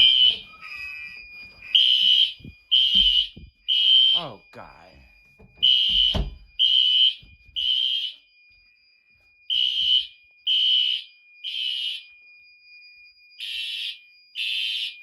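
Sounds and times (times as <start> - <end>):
faint steady high tone: 0.0 - 6.6
fire alarm horn blasts: 0.0 - 8.4, 9.5 - 12.2, 13.4 - 15.0.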